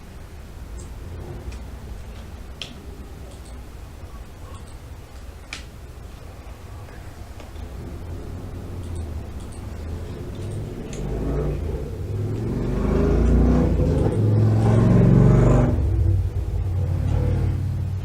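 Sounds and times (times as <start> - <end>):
vehicle engine driving past: 7.8 - 18.0.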